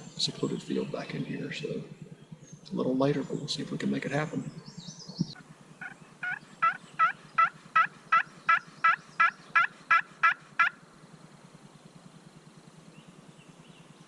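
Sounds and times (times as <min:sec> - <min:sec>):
turkey call hen yelps: 0:05.8 - 0:10.8.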